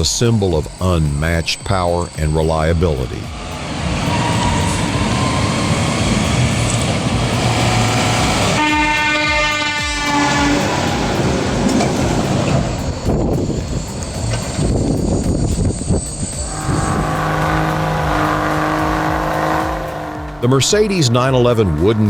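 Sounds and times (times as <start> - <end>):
heavy truck running: 0.0 - 22.0
air horn blast: 3.2 - 12.9, 16.4 - 21.0.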